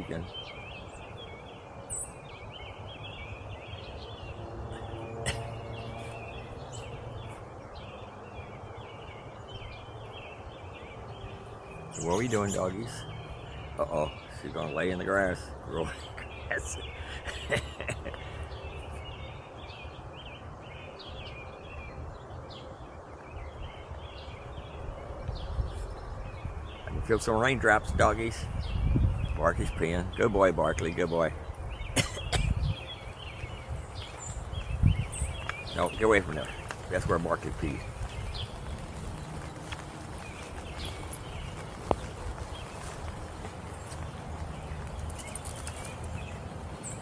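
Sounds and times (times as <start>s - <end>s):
outdoor background noise: 0.0s - 47.0s
songbirds chirping and singing: 0.0s - 47.0s
steady low rumble: 31.3s - 47.0s.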